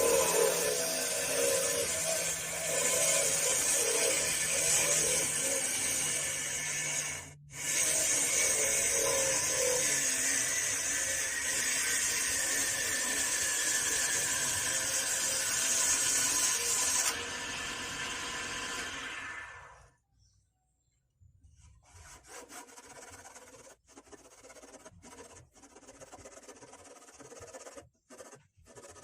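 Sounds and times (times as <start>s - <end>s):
power tool working wood: 0.0s - 19.8s.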